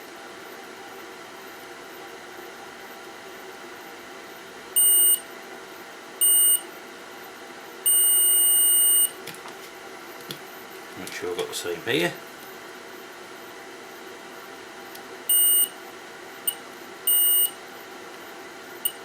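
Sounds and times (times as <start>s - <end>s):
multimeter beeping: 4.8s - 5.2s, 6.2s - 6.6s, 7.9s - 9.1s, 15.3s - 15.7s, 16.5s - 17.6s.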